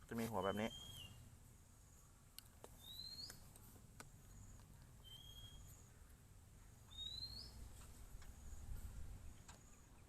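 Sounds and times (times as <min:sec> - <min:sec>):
faint bird calls: 0:00.4 - 0:02.0, 0:02.8 - 0:03.5, 0:04.2 - 0:06.2, 0:06.8 - 0:07.7.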